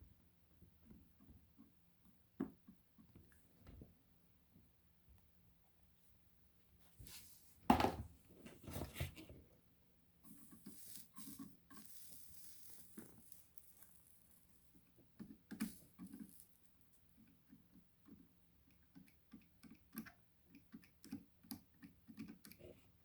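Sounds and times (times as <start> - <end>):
knocks on workbench: 7.7 - 8.0.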